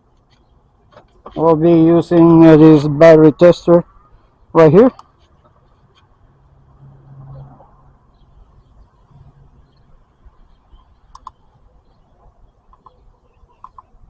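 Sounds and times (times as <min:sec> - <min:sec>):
faint sharp clicks and taps: 0:12.6 - 0:14.0.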